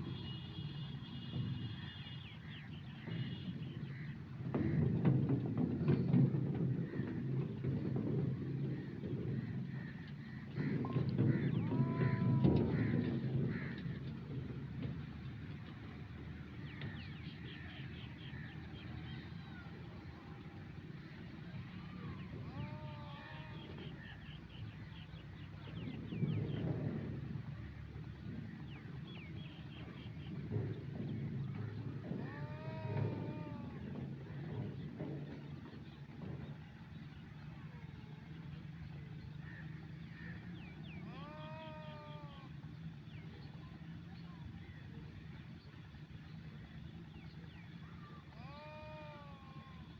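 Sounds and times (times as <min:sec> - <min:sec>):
low engine-like hum: 0:00.0 - 0:49.9
sheep bleating: 0:11.6 - 0:12.9, 0:22.4 - 0:23.7, 0:32.2 - 0:33.8, 0:41.0 - 0:42.6, 0:48.4 - 0:49.9
birds chirping rapidly: 0:22.0 - 0:37.4.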